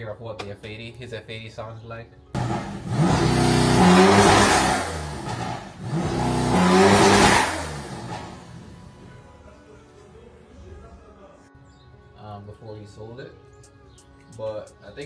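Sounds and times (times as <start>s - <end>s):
car engine revving: 2.4s - 9.2s.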